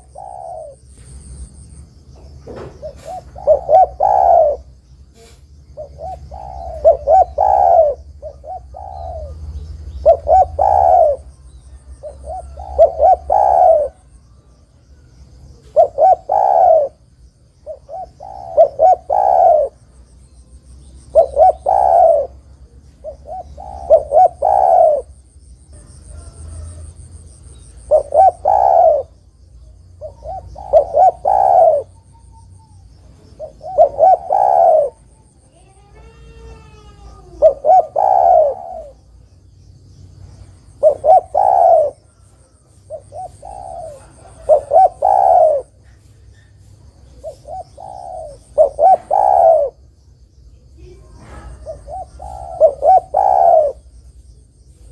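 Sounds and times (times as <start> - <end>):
dove cooing: 0.0 - 1.4, 2.2 - 20.0, 20.8 - 29.3, 29.9 - 39.2, 40.6 - 49.8, 50.8 - 53.9.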